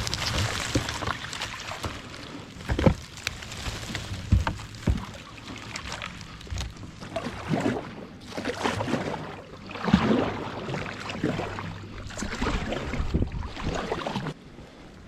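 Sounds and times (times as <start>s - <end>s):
paddle strokes splashing in water: 0.0s - 14.4s
dull low thumps: 1.9s - 5.3s.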